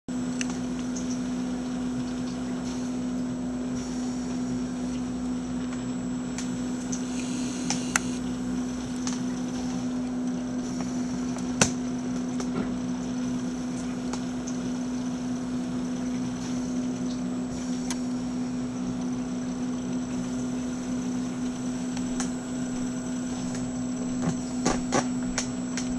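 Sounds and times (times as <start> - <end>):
vacuum cleaner running: 0.1 - 25.9
sharp clicks: 6.4 - 8.3.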